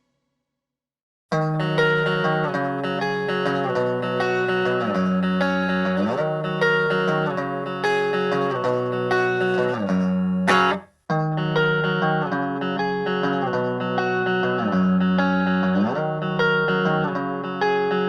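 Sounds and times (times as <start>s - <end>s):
electric guitar playing: 1.3s - 18.0s.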